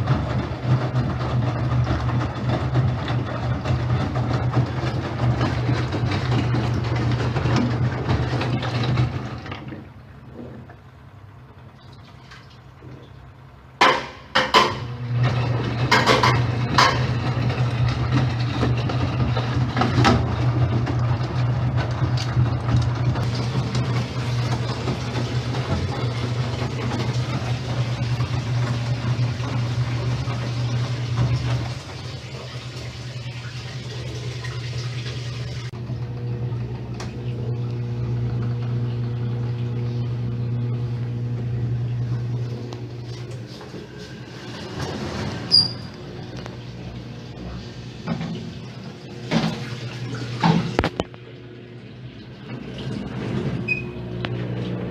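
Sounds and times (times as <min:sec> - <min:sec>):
washing machine motor hum: 0:00.0 - 0:54.9
water sloshing: 0:11.6 - 0:13.2.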